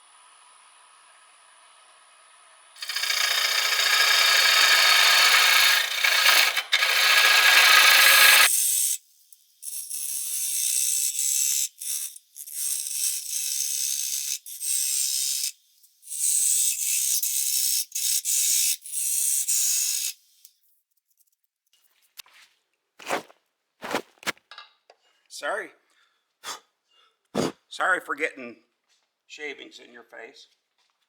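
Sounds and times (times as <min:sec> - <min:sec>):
gouge scraping wood on lathe: 0:02.8 - 0:08.5.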